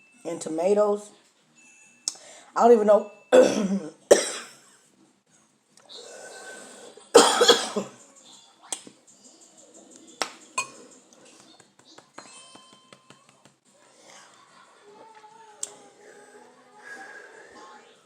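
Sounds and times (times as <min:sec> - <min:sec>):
woman coughing: 0:03.4 - 0:04.6, 0:07.2 - 0:08.0.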